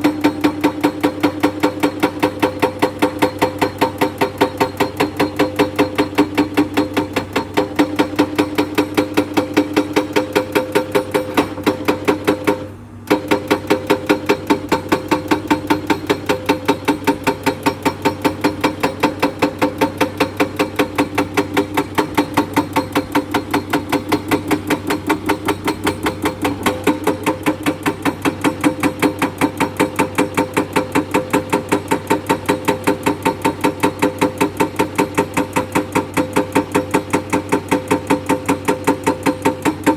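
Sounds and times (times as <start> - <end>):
excavator engine hum: 0.0 - 39.9
hydraulic rock breaker hammering: 0.0 - 39.9.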